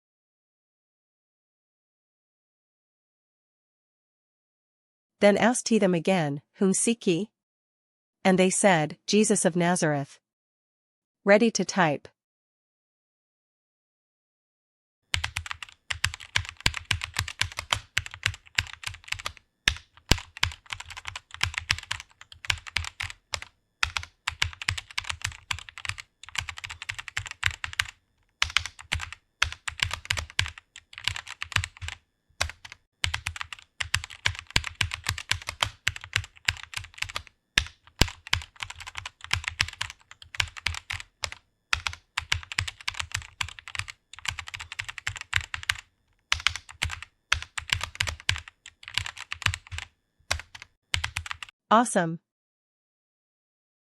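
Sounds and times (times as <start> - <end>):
rapid keyboard typing: 15.1 - 51.5.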